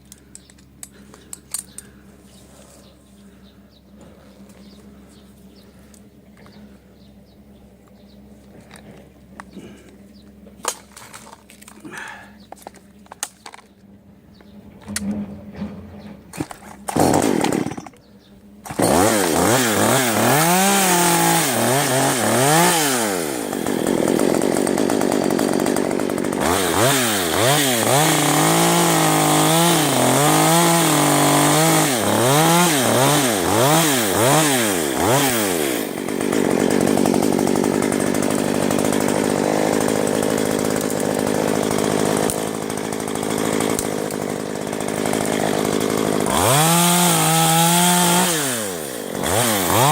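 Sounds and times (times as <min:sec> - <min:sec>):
chainsaw revving: 0:16.3 - 0:18.0, 0:18.6 - 0:49.9.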